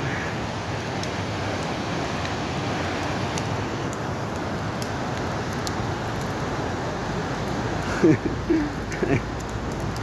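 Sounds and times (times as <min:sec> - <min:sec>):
bonfire rushing: 0:00.0 - 0:10.0
fire crackles and pops: 0:00.0 - 0:10.0.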